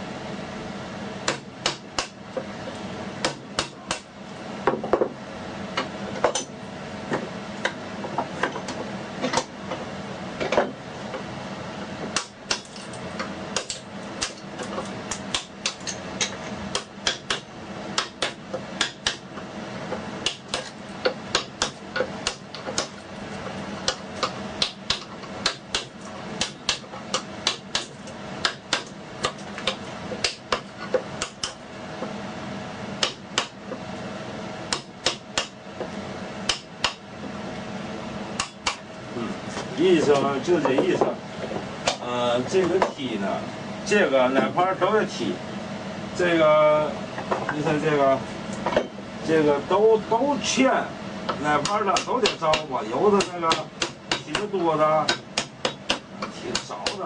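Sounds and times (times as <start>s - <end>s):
mallet tapping chisel into wood: 15.3s - 17.4s, 18.0s - 19.2s, 20.2s - 23.0s, 23.9s - 31.6s, 33.0s - 33.6s, 34.7s - 35.6s, 36.5s - 37.0s, 51.6s - 54.5s, 55.1s - 57.0s.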